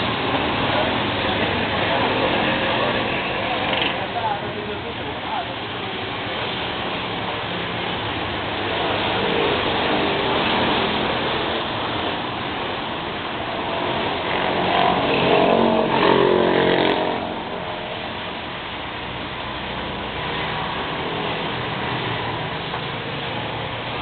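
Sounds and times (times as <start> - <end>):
road noise: 0.0 - 24.0
motor vehicle running: 6.1 - 24.0.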